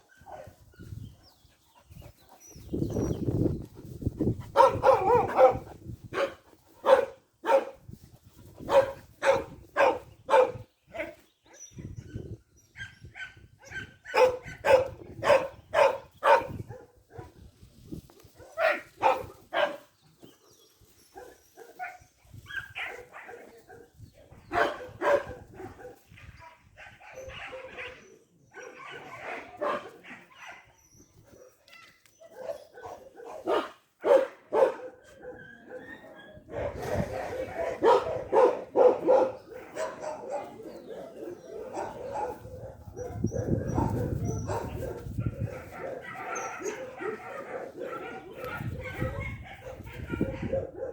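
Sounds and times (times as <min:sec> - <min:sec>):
dog barking: 0:00.2 - 0:00.6, 0:04.6 - 0:07.8, 0:08.7 - 0:11.1, 0:12.8 - 0:17.3, 0:18.4 - 0:19.9, 0:21.2 - 0:23.9, 0:24.5 - 0:30.7, 0:32.3 - 0:50.9.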